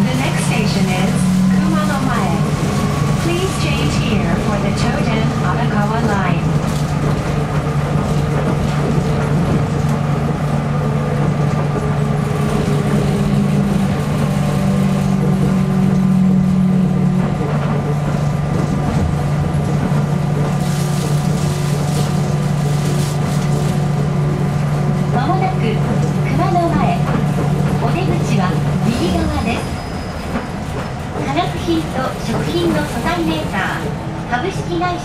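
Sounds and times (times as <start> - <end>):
train running low hum: 0.0 - 35.0.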